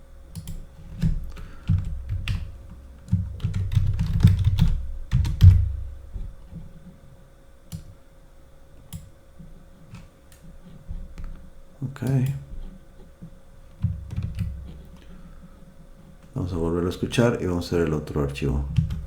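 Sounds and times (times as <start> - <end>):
keyboard typing: 0.3 - 6.2, 13.7 - 15.1, 17.8 - 19.0.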